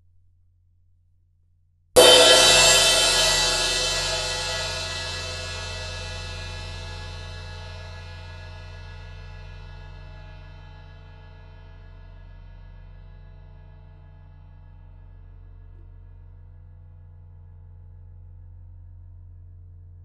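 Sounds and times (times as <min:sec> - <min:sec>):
cymbal crash ringing: 0:02.0 - 0:07.5.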